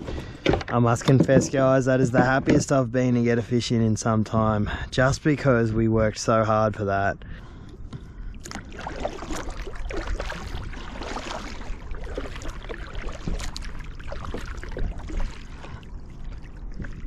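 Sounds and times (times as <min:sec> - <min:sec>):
water splashing against kayak hull: 0:07.9 - 0:17.0
small splashes: 0:08.4 - 0:17.0.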